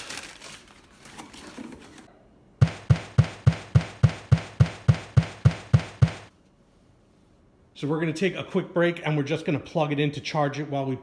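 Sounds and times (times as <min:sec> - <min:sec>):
deep drum hits: 0:02.6 - 0:06.3.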